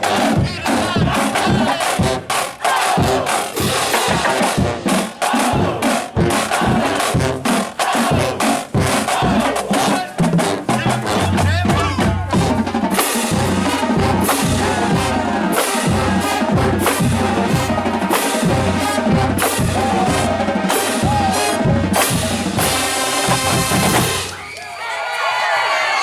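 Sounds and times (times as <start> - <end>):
marching band music: 0.0 - 24.6
bass drums and snares beating: 3.0 - 15.3.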